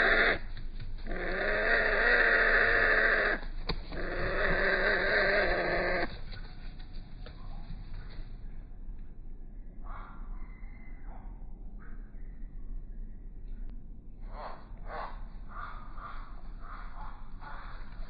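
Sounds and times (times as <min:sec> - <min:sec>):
slowed-down bird calls: 0:00.0 - 0:06.2, 0:14.3 - 0:18.0.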